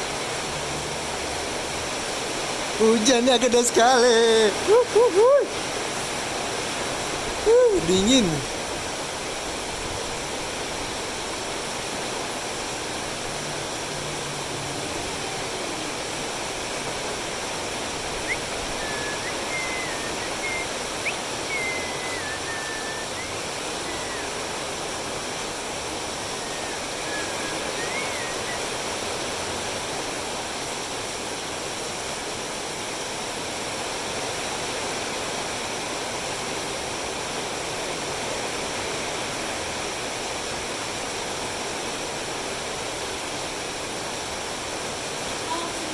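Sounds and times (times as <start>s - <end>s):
heavy rain falling: 0.0s - 45.9s
faint high chirps: 18.2s - 24.5s, 26.3s - 28.7s.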